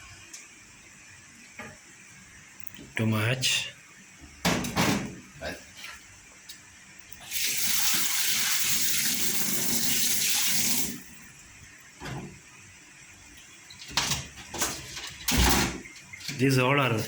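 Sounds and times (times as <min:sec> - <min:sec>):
water running from a tap: 0:07.2 - 0:11.3.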